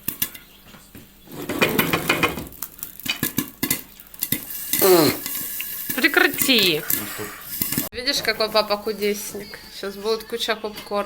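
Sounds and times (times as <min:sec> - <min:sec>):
metal utensil stirring in pan: 0:01.6 - 0:09.2
popcorn popping clicks: 0:01.8 - 0:06.6.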